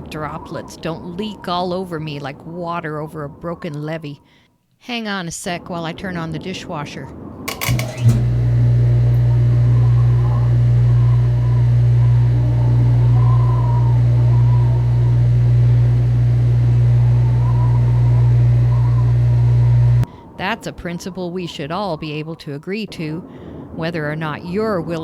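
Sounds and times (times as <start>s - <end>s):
clicks: 7.5s - 20.1s
dishwasher humming: 7.5s - 20.1s.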